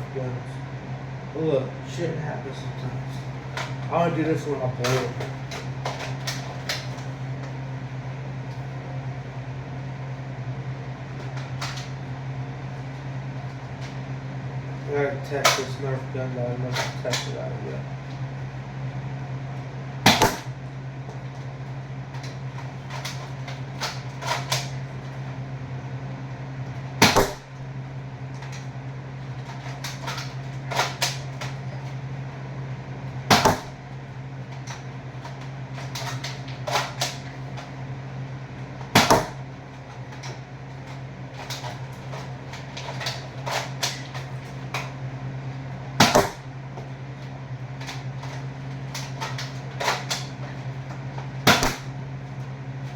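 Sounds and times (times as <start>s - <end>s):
steady low hum: 0.0s - 52.9s
toy blaster shot snap: 20.1s - 20.5s, 27.0s - 27.5s.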